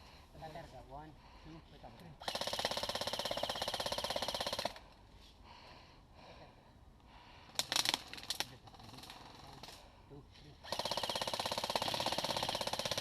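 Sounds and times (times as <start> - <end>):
sharp clicks: 7.5 - 9.8
airsoft gun firing full-auto: 10.6 - 13.0.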